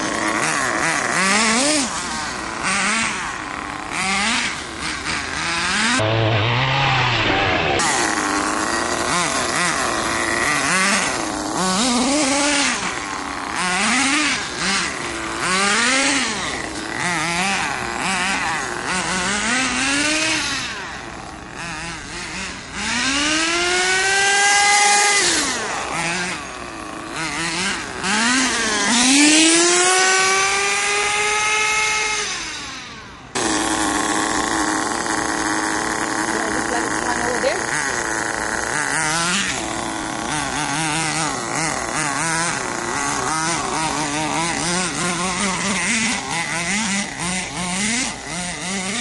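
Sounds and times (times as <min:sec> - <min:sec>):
nitro engine revving: 0:00.0 - 0:49.0.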